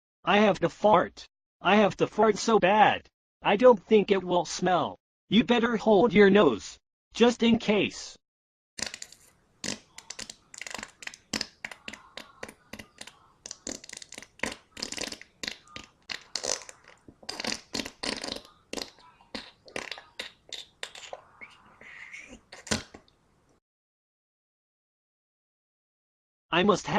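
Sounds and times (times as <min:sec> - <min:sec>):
cartoon fart noises: 0:08.8 - 0:21.5, 0:22.1 - 0:23.1.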